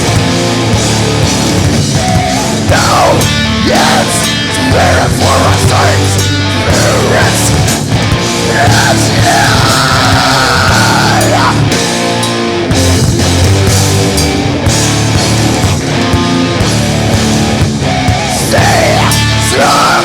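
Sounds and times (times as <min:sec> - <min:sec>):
heavy metal band playing: 0:00.0 - 0:20.0.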